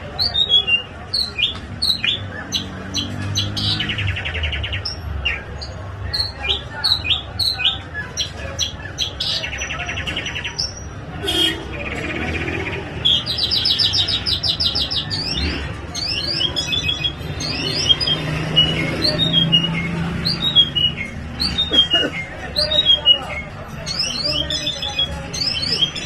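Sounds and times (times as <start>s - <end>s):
songbird singing trills: 12.0s - 26.0s.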